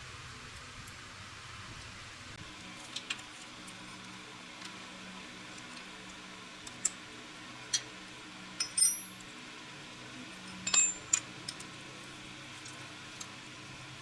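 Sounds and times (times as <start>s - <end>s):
metal parts clinking: 8.6s - 9.2s, 10.6s - 11.6s.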